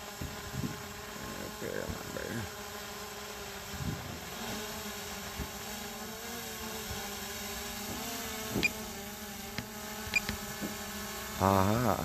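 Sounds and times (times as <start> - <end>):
drone propellers buzzing: 3.9 - 12.0
sharp click: 9.5 - 10.4.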